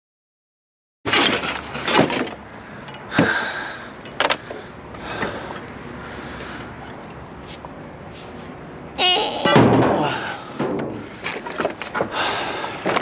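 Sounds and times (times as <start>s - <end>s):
debris clattering in a dumpster: 1.1s - 2.4s, 9.4s - 12.2s.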